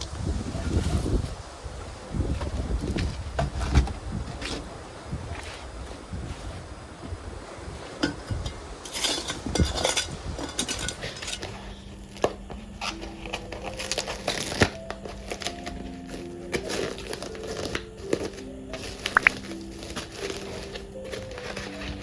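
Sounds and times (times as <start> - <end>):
hard objects clinking: 8.0 - 22.0
background music: 8.8 - 22.0.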